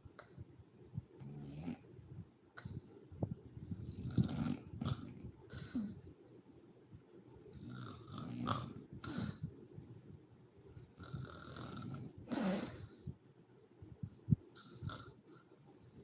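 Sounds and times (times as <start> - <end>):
woman snoring: 11.0 - 12.9.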